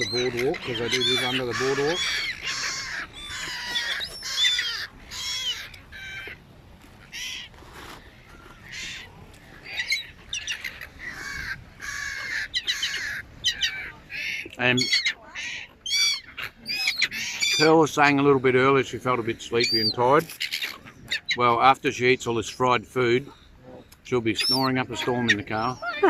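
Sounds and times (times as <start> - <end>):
gulls calling: 0.0 - 26.0.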